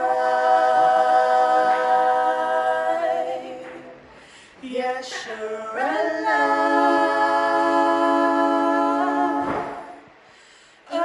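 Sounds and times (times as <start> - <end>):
person singing a capella: 0.0 - 3.9, 4.6 - 10.1
singer breathing: 4.1 - 4.6, 10.2 - 10.9.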